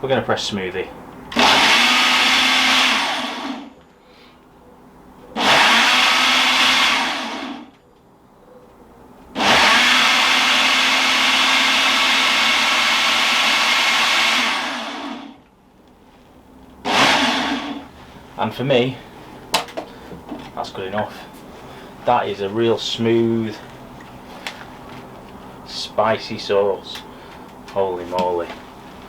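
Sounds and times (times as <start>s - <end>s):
blender motor running: 1.3s - 3.7s, 5.4s - 7.7s, 9.4s - 15.4s, 16.8s - 17.9s.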